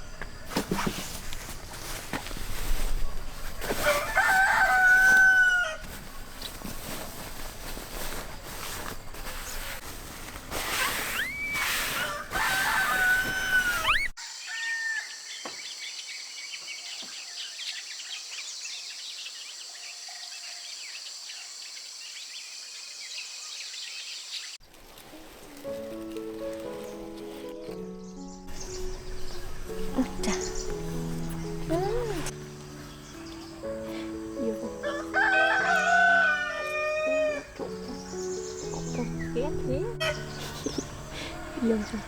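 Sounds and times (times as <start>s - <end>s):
farmyard background noise: 1.3s - 10.3s, 27.6s - 42.0s
rooster crowing: 3.8s - 5.9s, 11.9s - 15.4s, 34.8s - 37.5s, 40.0s - 42.0s.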